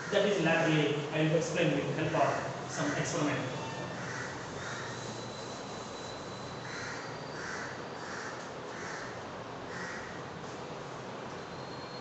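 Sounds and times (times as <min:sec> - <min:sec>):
steady background hiss: 0:00.0 - 0:12.0
bird cawing: 0:02.5 - 0:05.5, 0:06.6 - 0:10.2.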